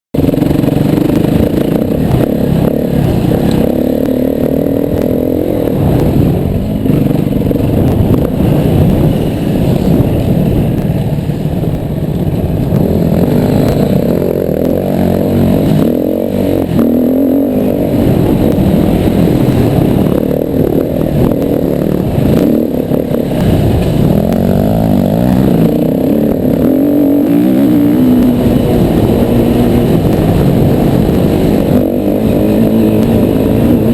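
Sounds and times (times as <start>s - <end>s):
dirt bike engine revving: 0.2s - 33.9s.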